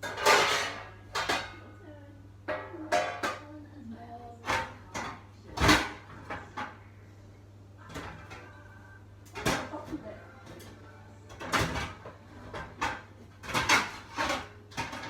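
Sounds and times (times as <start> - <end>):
metal kitchenware clattering: 0.0 - 1.7, 2.5 - 3.5, 4.4 - 6.9, 9.3 - 15.0.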